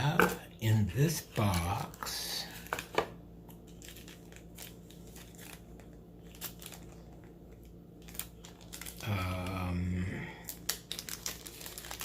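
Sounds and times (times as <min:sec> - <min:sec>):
packaging crinkling: 0:01.1 - 0:09.7, 0:10.4 - 0:12.0.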